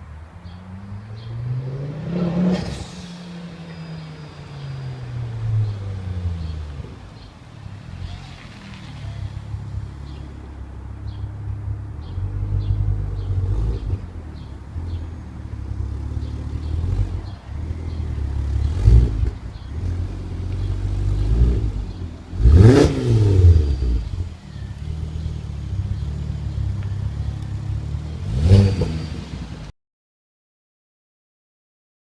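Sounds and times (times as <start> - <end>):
car engine revving: 0.4 - 29.7.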